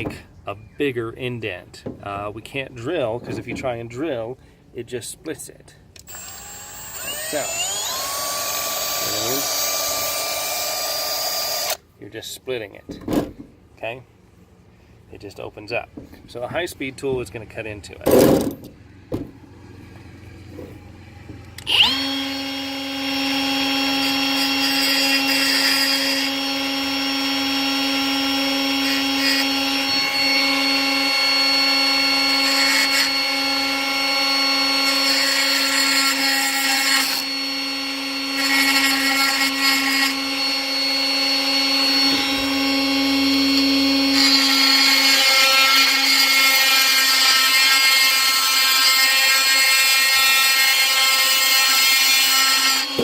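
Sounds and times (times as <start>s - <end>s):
burr grinding metal: 6.0s - 11.8s, 18.0s - 53.0s
rotary tool high whine: 6.0s - 11.8s, 19.6s - 53.0s.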